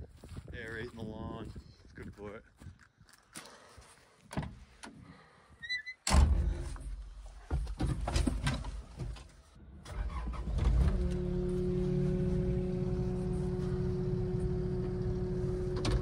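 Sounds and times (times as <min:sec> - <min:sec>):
excavator diesel engine running: 0:11.2 - 0:16.0.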